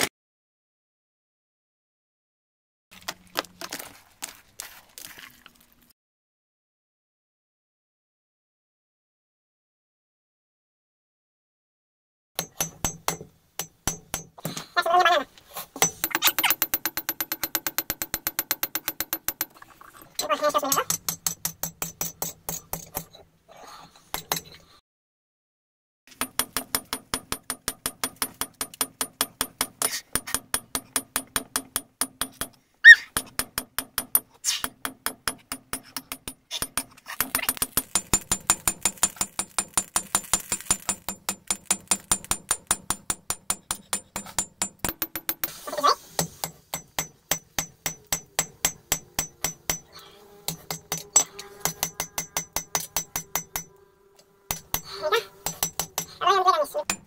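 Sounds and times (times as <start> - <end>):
hammer ringing on steel: 15.8 - 19.6, 46.4 - 53.8, 54.5 - 56.2.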